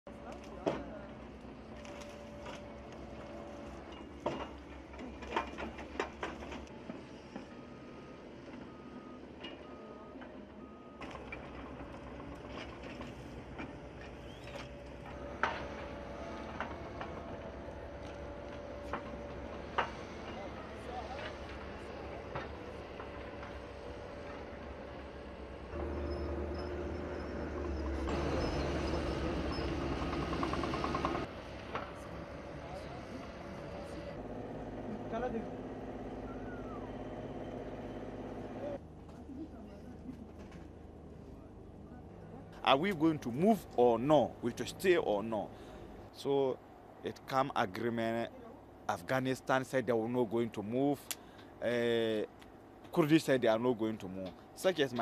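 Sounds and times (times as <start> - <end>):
bulldozer engine rumble: 0.1 - 55.0
reversing alarm beeps: 7.0 - 11.9, 26.0 - 30.1.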